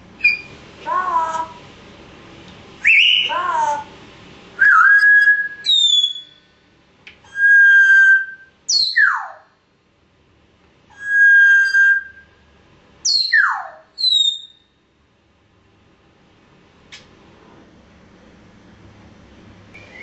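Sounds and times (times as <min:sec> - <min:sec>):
parrot whistling notes: 0:00.2 - 0:00.6, 0:02.8 - 0:03.4, 0:04.6 - 0:06.4, 0:07.3 - 0:09.4, 0:10.9 - 0:12.3, 0:13.1 - 0:14.6.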